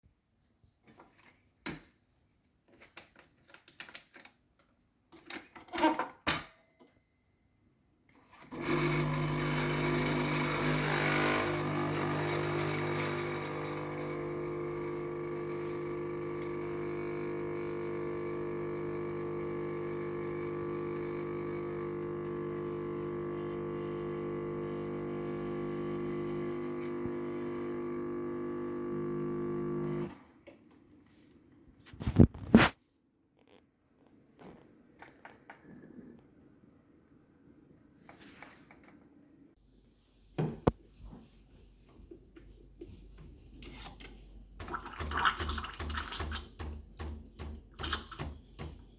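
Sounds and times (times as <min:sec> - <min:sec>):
coffee machine pump humming: 0:08.5 - 0:30.2, 0:44.6 - 0:48.9
clicks and knocks of machine: 0:44.6 - 0:48.9.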